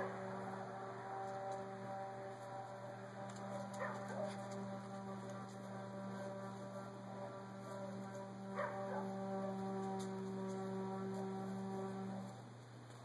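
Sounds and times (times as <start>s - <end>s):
low droning tones: 0.0s - 13.0s
dog yelping: 3.8s - 4.4s, 8.6s - 9.1s.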